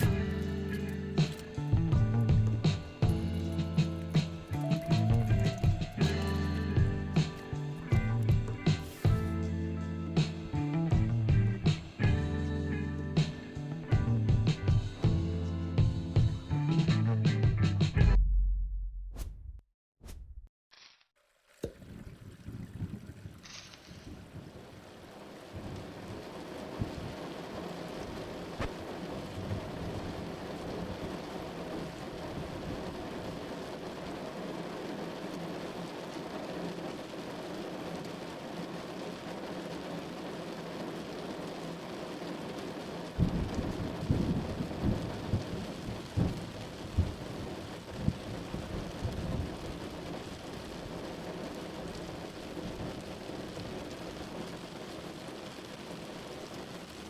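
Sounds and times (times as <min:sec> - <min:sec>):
steady rain: 0:00.0 - 0:17.8, 0:21.2 - 0:57.0
thunder rumbling and cracking: 0:23.9 - 0:37.4, 0:42.4 - 0:57.0.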